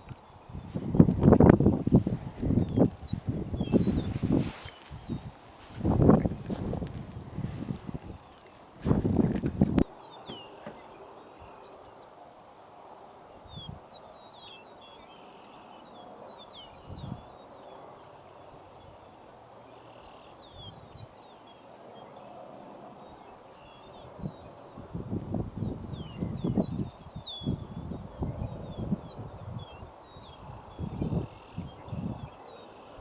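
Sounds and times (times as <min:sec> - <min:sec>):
outdoor background hiss: 0:00.0 - 0:20.5
birds chirping: 0:00.0 - 0:22.4, 0:23.0 - 0:33.0
faint low thumps: 0:00.8 - 0:10.8.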